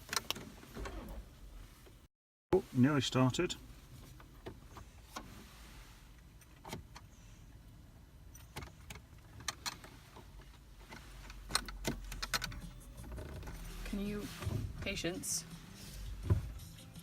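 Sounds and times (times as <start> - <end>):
car key clicks and rattles: 11.3 - 13.7.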